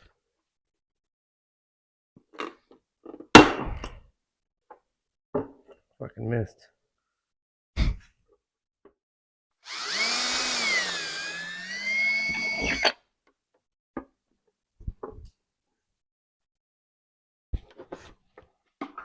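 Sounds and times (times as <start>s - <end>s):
power drill drilling into plastic: 9.6s - 13.0s.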